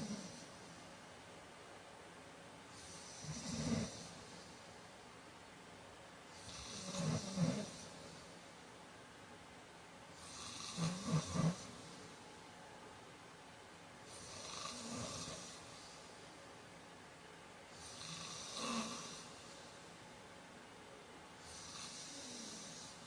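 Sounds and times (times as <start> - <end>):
man snoring: 0.0 - 0.6, 2.8 - 4.3, 6.4 - 8.1, 10.2 - 12.0, 14.1 - 15.8, 17.8 - 19.7, 21.5 - 23.0.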